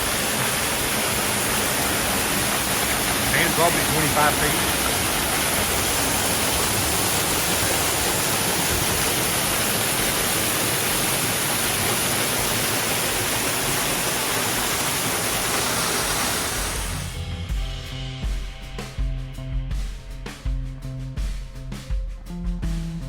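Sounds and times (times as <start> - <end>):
waterfall rushing: 0.0 - 17.2.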